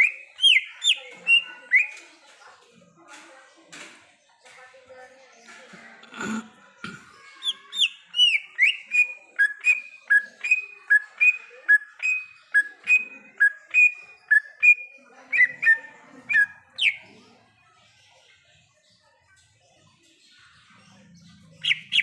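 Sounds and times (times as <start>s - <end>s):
bird singing whistled notes: 0.0s - 2.0s, 7.8s - 17.0s.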